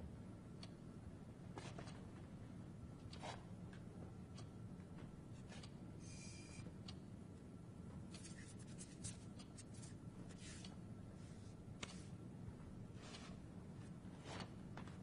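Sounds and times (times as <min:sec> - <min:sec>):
low steady hum: 0:00.0 - 0:15.0
light clicks and scratches: 0:08.1 - 0:12.1
soft scratching: 0:08.2 - 0:12.1.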